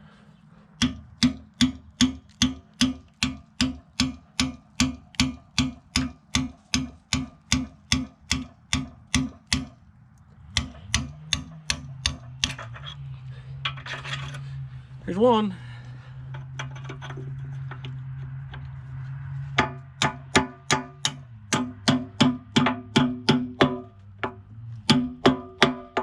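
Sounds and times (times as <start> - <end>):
hammer striking a metal punch: 0.8 - 9.8, 10.5 - 12.6, 19.6 - 26.0.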